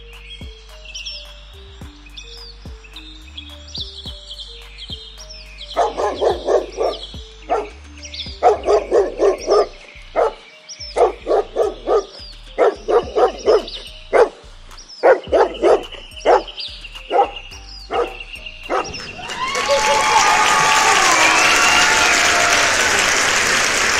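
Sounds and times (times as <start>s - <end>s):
dog barking: 5.8s - 7.7s, 8.4s - 10.4s, 11.0s - 14.4s, 15.0s - 19.0s.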